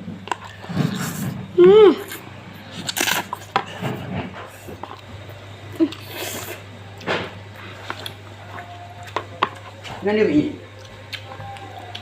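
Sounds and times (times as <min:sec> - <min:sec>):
chewing and slurping: 0:00.2 - 0:10.0, 0:10.7 - 0:12.0.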